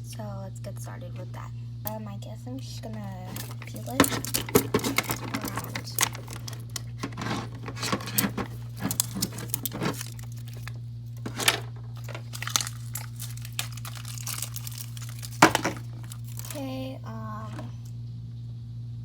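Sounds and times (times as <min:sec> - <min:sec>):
steady low hum: 0:00.0 - 0:19.0
plastic wrapping crinkling: 0:02.9 - 0:17.7.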